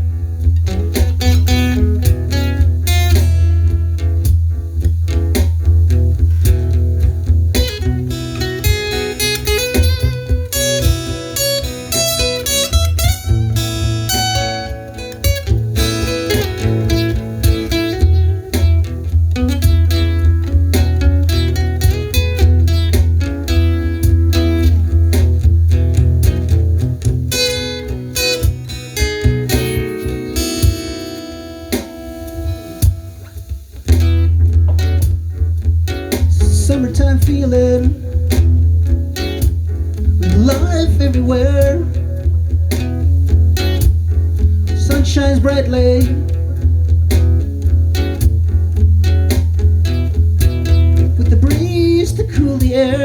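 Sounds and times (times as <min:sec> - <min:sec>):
acoustic guitar playing: 0:00.0 - 0:53.0
bass line: 0:00.0 - 0:53.0
wavering melody: 0:28.8 - 0:31.7.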